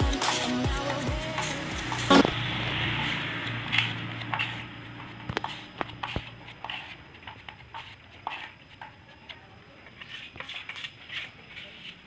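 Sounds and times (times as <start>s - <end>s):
background music: 0.0s - 3.4s.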